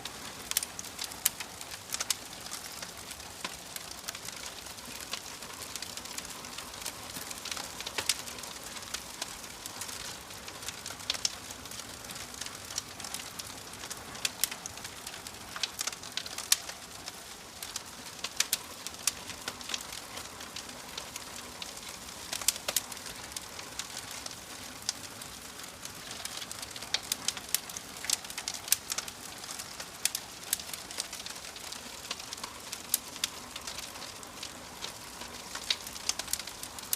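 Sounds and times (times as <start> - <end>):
wood fire crackling: 0.0 - 36.9.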